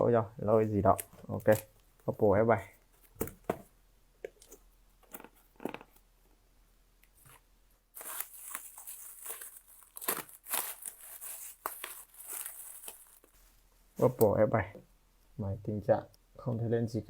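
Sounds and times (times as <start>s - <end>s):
plastic packaging crinkling: 7.9s - 13.5s.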